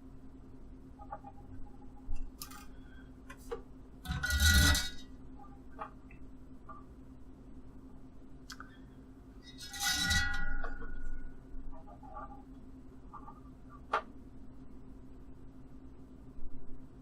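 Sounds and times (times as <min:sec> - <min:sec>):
steady low hum: 0:00.0 - 0:17.0
scraping rustle: 0:03.4 - 0:05.1, 0:09.5 - 0:11.2.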